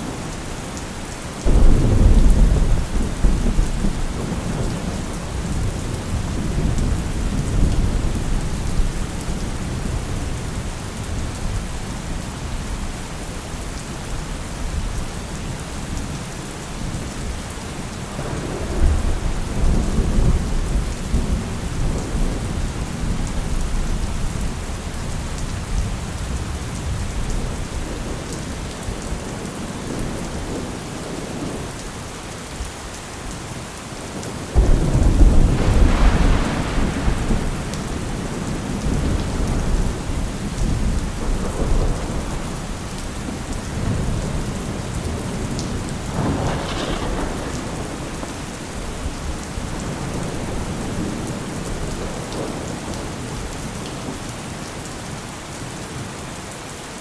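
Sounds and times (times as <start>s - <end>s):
steady rain: 0.0s - 57.0s
loud thunder crack: 1.4s - 8.9s, 34.6s - 42.7s, 45.1s - 52.6s
thunder rumbling: 1.4s - 11.5s, 18.2s - 31.6s, 34.2s - 53.5s.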